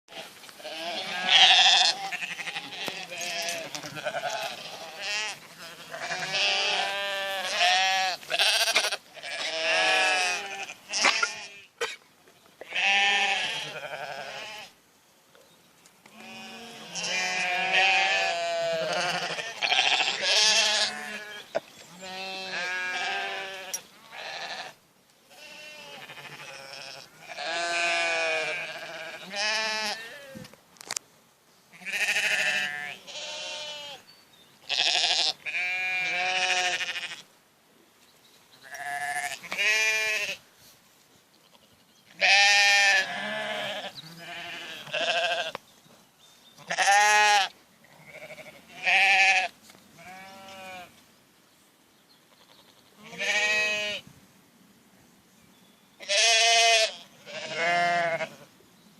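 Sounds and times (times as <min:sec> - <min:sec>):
sheep bleating: 0:00.1 - 0:11.8, 0:12.6 - 0:14.7, 0:16.1 - 0:30.4, 0:31.7 - 0:34.0, 0:34.7 - 0:37.2, 0:38.6 - 0:40.4, 0:41.5 - 0:45.6, 0:46.6 - 0:50.9, 0:52.4 - 0:54.0, 0:56.0 - 0:58.5
sheep coughing: 0:10.9 - 0:12.0.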